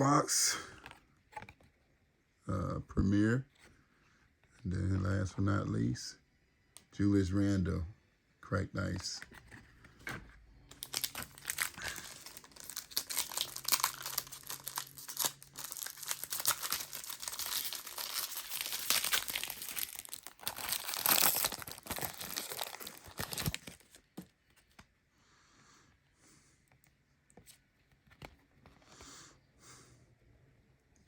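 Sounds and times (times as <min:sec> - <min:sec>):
plastic wrapper crinkling and tearing: 0:10.7 - 0:24.8.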